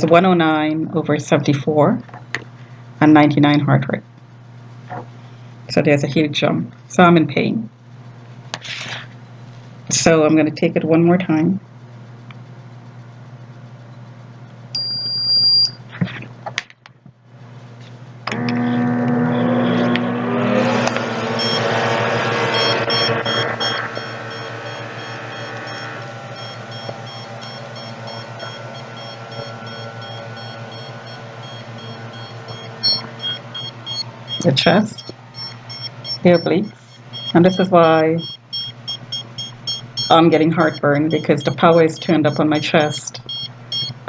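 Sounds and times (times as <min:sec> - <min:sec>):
monitor beep: 0:14.8 - 0:15.8, 0:18.3 - 0:44.0
cuff pump motor running: 0:17.3 - 0:44.0
rapid high-pitched beeping: 0:18.8 - 0:44.0.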